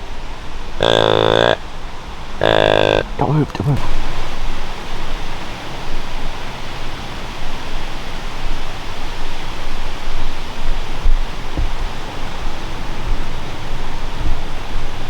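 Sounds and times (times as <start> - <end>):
wind buffeting microphone: 3.1 - 15.0.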